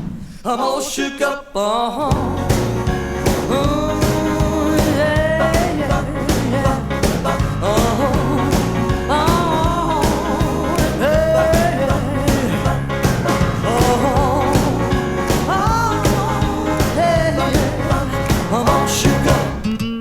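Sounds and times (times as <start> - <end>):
drum and bass beat: 2.1 - 19.6
sliding lead melody: 2.2 - 19.7.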